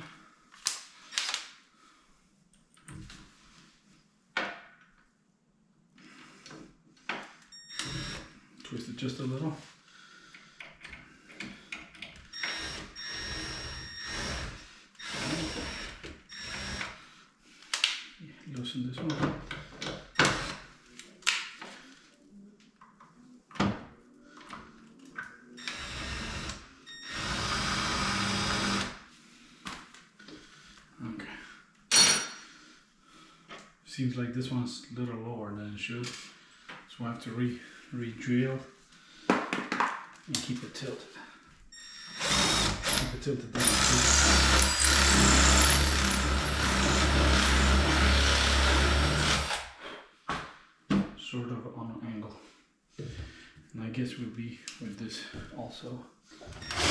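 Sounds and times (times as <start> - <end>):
power drill drilling wood: 7.8 - 8.3, 12.4 - 16.9, 20.2 - 20.6, 25.6 - 29.0, 42.0 - 49.7, 56.6 - 56.9.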